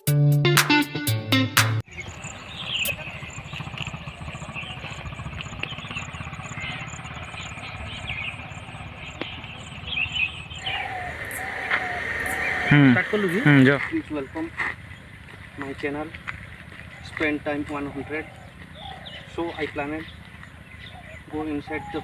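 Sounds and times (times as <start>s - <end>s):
music track: 0.0s - 1.9s
birds chirping: 1.8s - 22.0s.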